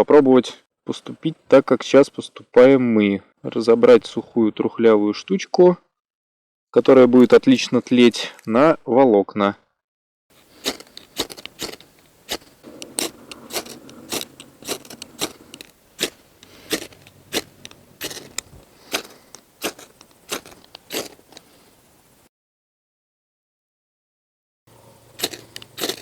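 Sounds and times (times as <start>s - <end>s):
metal striker rasping on firesteel: 10.4s - 21.9s, 24.9s - 26.0s.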